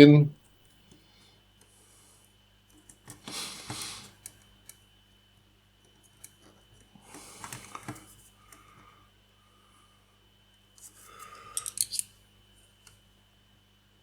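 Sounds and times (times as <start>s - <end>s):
plastic parts clicking and scraping: 11.6s - 12.1s.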